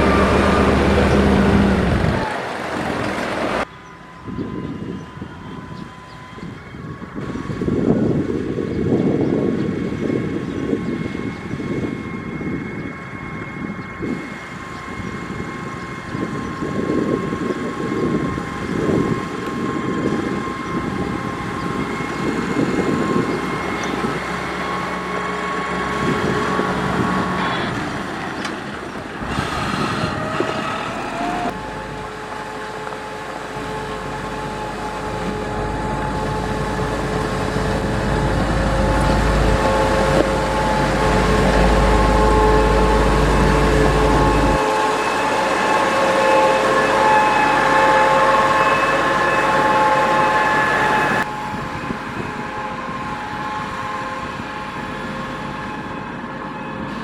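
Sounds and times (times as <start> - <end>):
diesel engine running: 0.0 - 57.0
gusty noise: 0.0 - 57.0
steady whine: 0.0 - 57.0
short rising whine: 29.2 - 57.0.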